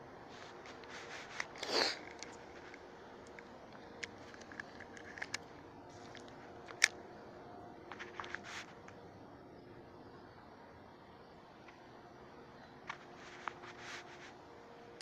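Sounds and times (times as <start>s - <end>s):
faint outdoor background: 0.0s - 15.0s
handling clicks and scrapes: 0.2s - 7.0s, 7.9s - 9.0s, 12.9s - 14.4s
short rustle: 0.3s - 2.8s, 8.0s - 8.8s, 12.9s - 14.4s.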